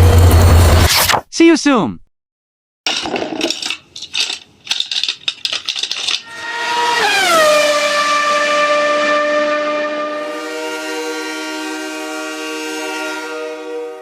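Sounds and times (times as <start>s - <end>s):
clatter of clicks and rattles: 2.9s - 6.4s
train horn blowing: 6.3s - 14.0s.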